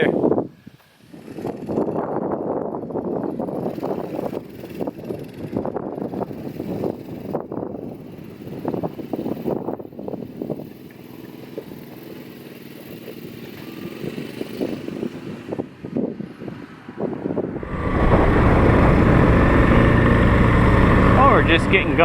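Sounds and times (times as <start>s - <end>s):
quad bike engine: 1.0s - 16.1s, 17.3s - 22.0s.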